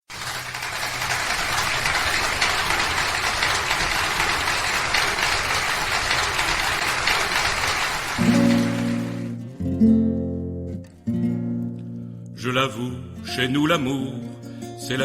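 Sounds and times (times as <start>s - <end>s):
audience applauding: 0.0s - 9.4s
acoustic guitar strumming chords: 8.2s - 15.0s.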